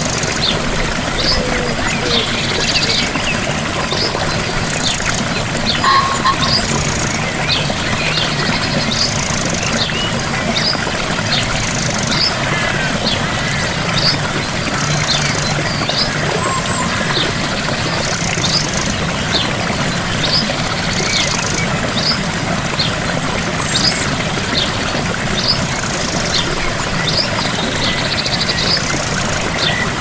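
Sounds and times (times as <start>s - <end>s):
waterfall rushing: 0.0s - 9.1s, 9.7s - 18.2s
birds chirping: 0.4s - 11.5s, 14.0s - 18.7s.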